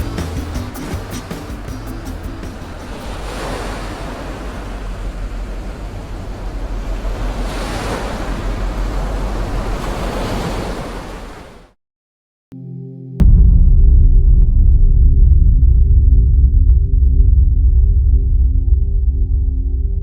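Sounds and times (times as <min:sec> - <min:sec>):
ocean surf washing in: 0:00.0 - 0:11.8
wind rumble on microphone: 0:13.2 - 0:20.0.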